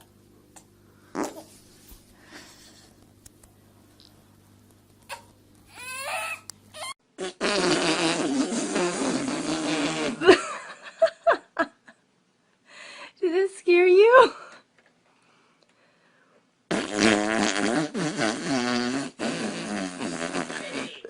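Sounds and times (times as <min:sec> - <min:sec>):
long fart: 0:01.1 - 0:01.5, 0:06.8 - 0:10.4, 0:16.7 - 0:21.0.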